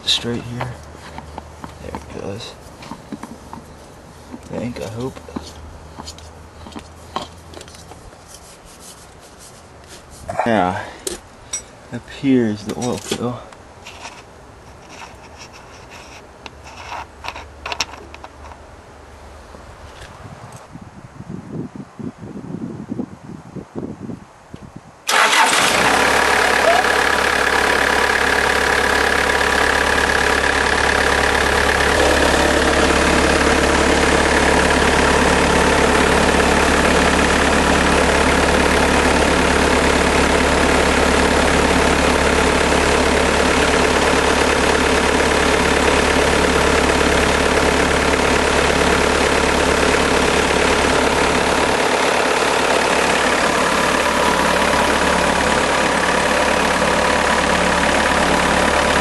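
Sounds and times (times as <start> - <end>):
diesel engine idling: 0.0 - 8.1, 25.1 - 59.0.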